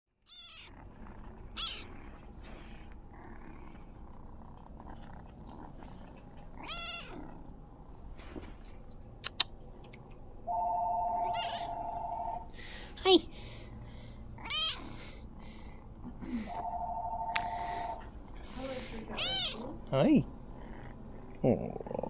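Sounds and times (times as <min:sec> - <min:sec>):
cat meowing: 0:00.3 - 0:00.8, 0:01.6 - 0:02.0, 0:06.6 - 0:07.2, 0:11.2 - 0:12.0, 0:14.4 - 0:14.9, 0:19.1 - 0:19.7
cat purring: 0:00.4 - 0:07.9, 0:20.4 - 0:22.0.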